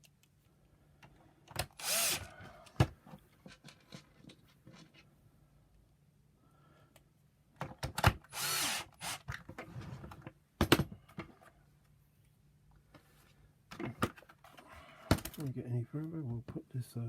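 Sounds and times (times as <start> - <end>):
plastic parts clicking and knocking: 7.6 - 8.4, 13.7 - 15.5.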